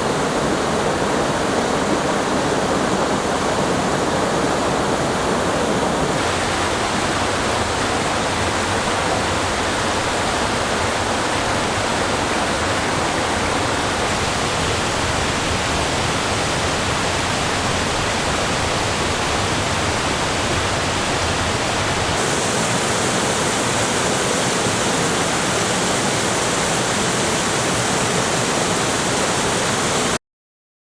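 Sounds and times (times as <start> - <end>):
waterfall rushing: 0.0 - 30.2.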